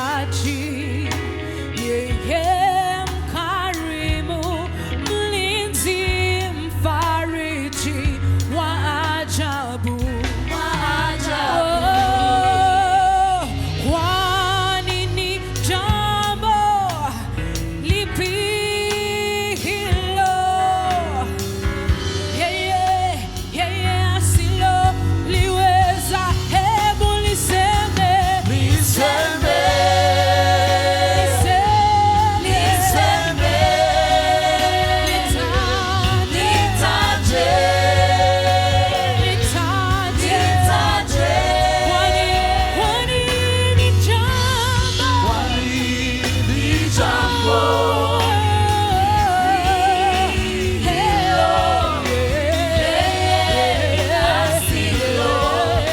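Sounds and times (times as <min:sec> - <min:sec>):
band with steady bass: 0:00.0 - 0:55.9
choir singing gospel song: 0:00.0 - 0:55.9.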